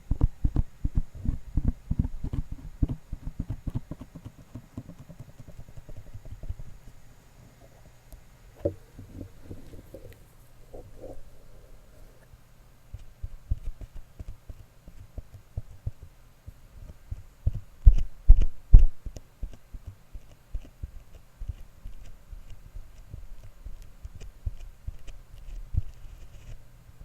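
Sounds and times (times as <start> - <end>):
faint low hum: 0.0 - 27.0
hands thumping and tapping: 0.2 - 6.6.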